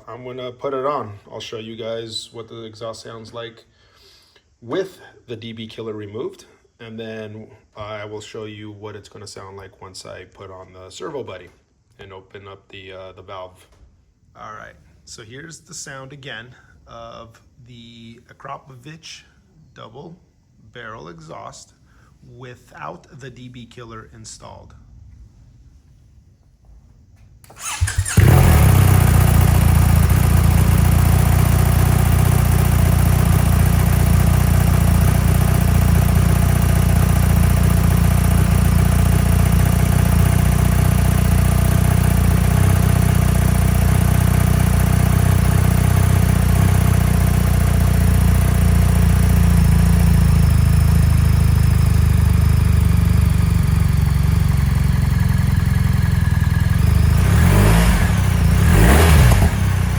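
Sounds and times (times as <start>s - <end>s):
motorcycle engine idling: 27.5s - 59.9s.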